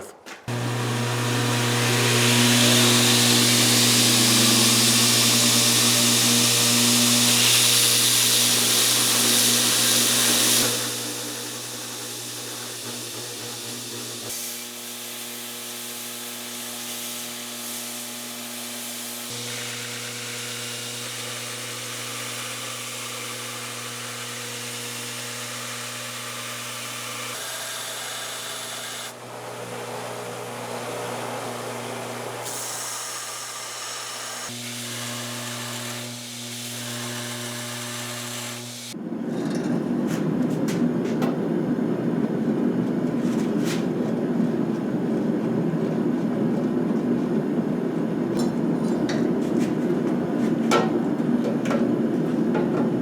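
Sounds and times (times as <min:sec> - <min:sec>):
grinder motor hum: 0:00.4 - 0:53.0
high grinding hiss: 0:00.5 - 0:29.2.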